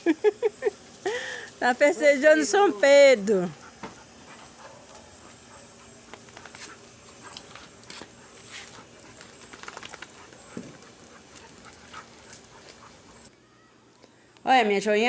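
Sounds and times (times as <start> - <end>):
dog paws pattering: 1.8 - 13.4.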